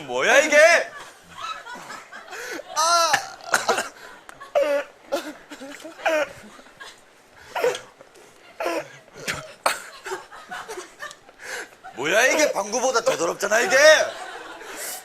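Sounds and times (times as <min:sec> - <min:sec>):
laughter: 0:00.8 - 0:03.1, 0:03.8 - 0:07.1, 0:08.3 - 0:15.0
man burping: 0:02.8 - 0:05.3.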